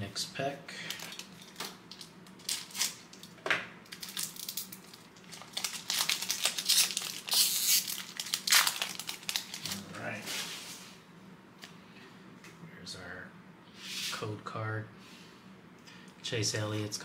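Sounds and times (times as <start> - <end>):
plastic wrapper crinkling and tearing: 0.9 - 10.0.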